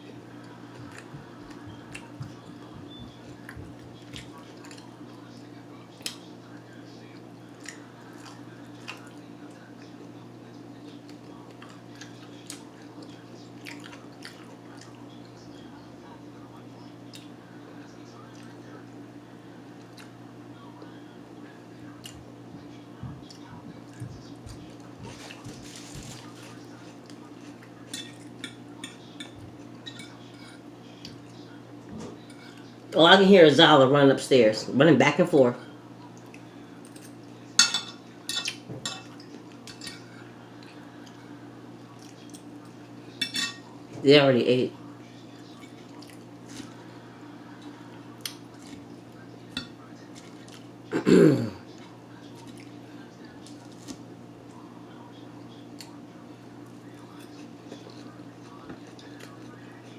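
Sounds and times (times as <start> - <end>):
chewing: 0.4 - 6.3, 7.1 - 10.1, 10.9 - 15.4, 18.1 - 18.7, 19.7 - 20.2, 23.1 - 33.0, 36.0 - 37.3, 38.4 - 43.0, 45.3 - 50.7, 51.7 - 54.7, 55.5 - 59.9
cutlery clinking on dishes: 27.9 - 30.6, 36.9 - 40.2, 43.2 - 43.7, 49.5 - 49.8.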